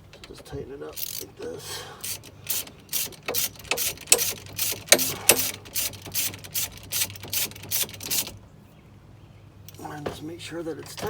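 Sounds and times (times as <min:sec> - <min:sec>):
ratchet wrench clicking: 0:00.0 - 0:01.4, 0:02.0 - 0:08.4.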